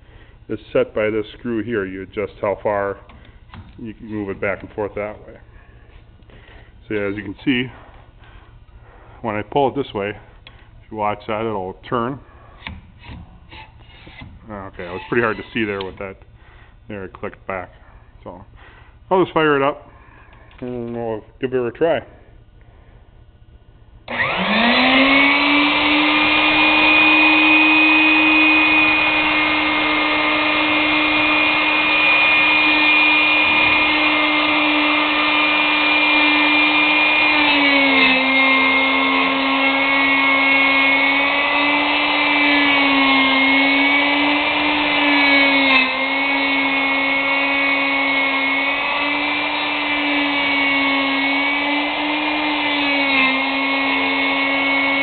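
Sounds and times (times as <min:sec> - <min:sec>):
cutter cutting under load: 0:24.1 - 0:55.0
router motor whining: 0:24.1 - 0:55.0.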